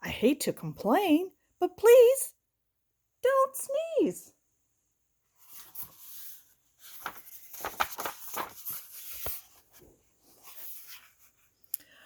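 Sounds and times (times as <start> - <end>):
paper pages rustling: 5.4 - 11.6.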